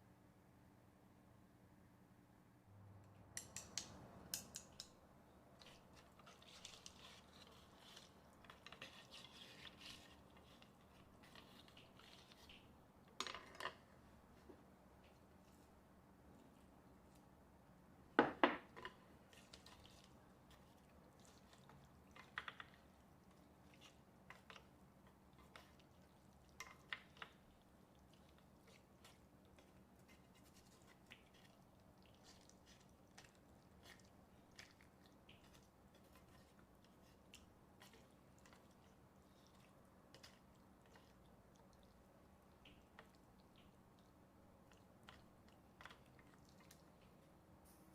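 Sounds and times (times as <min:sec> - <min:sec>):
faint chewing: 0:04.4 - 0:13.2, 0:18.7 - 0:47.8.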